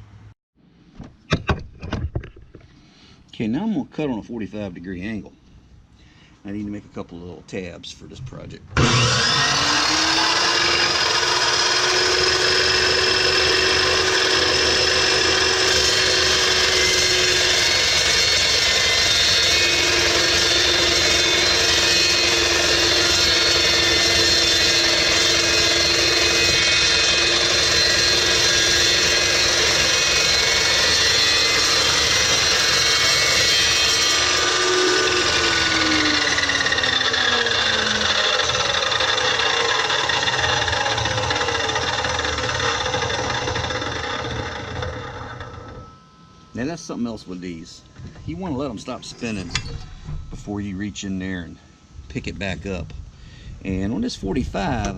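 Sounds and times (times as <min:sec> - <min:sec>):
chop saw cutting steel: 0:08.8 - 0:46.0, 0:48.3 - 0:50.6.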